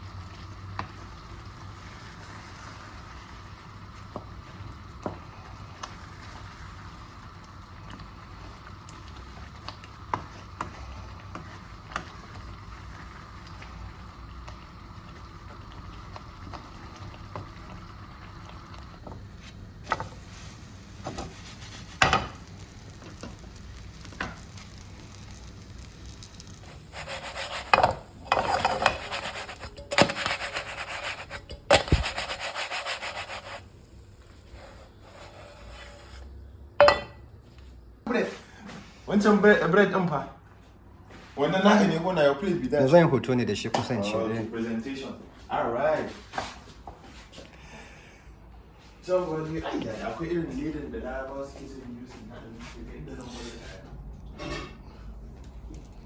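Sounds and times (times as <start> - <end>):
steady hum: 0.0 - 38.6
utensil scraping cookware: 26.0 - 33.6, 34.5 - 37.2.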